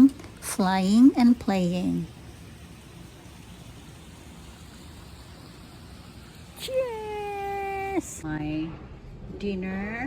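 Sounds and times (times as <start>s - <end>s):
fountain water splashing: 0.0s - 8.2s.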